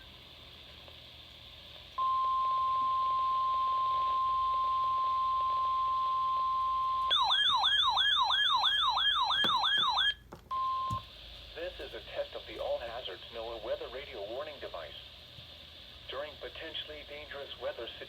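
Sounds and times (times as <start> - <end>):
steady alarm tone: 2.0 - 11.0
warbling siren: 2.4 - 10.2.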